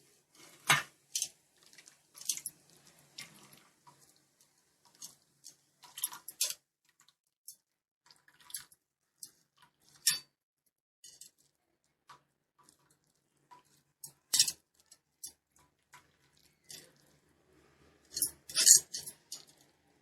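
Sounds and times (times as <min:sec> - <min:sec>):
water dripping and splashing: 0:01.1 - 0:07.2, 0:08.0 - 0:10.0.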